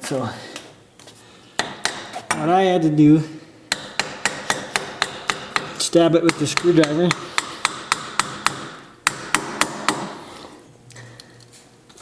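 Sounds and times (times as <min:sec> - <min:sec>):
hammer striking screwdriver: 0:03.7 - 0:10.1.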